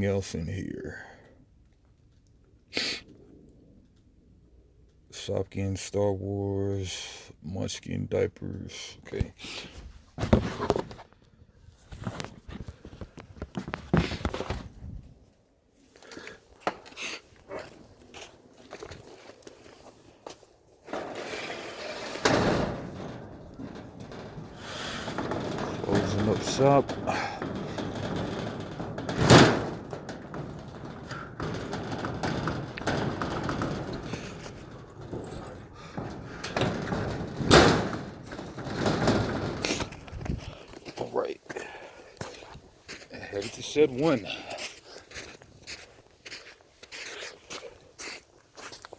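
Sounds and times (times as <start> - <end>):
rustling and knocking of items: 9.8 - 14.9, 16.0 - 41.1
footsteps: 16.0 - 48.9.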